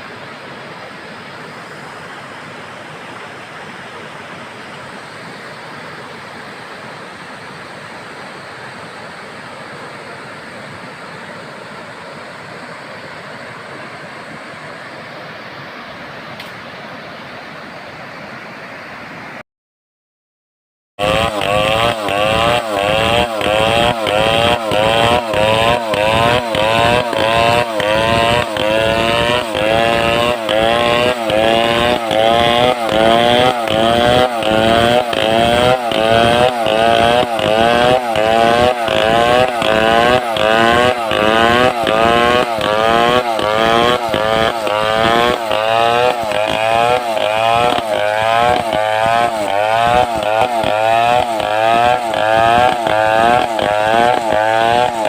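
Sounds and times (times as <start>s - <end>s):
chainsaw cutting wood: 21.0s - 55.0s.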